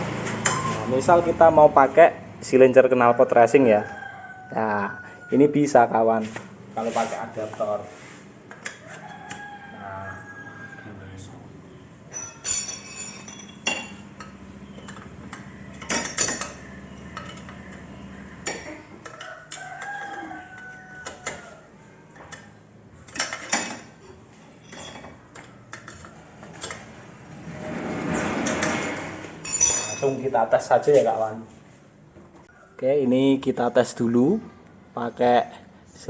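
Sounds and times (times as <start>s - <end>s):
rooster crowing: 3.5s - 6.1s, 8.7s - 11.5s, 16.6s - 22.6s
metal exhaust parts clinking: 12.0s - 21.5s, 22.1s - 30.6s
sharp metal clanks: 12.1s - 14.4s, 29.4s - 30.2s.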